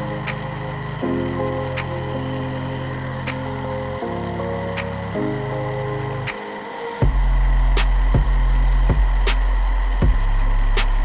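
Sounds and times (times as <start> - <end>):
held synth chords: 0.0 - 11.0.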